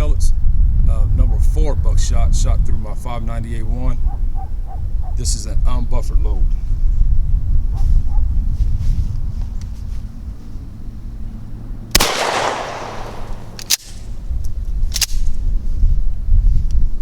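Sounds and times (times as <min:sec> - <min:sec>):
shotgun shot with echo: 0:12.0 - 0:13.6.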